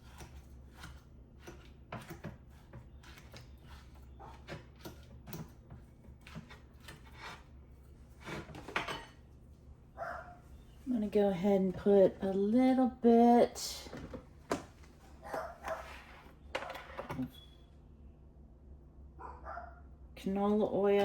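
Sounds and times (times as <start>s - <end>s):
kitchen utensils clattering: 8.3s - 9.2s.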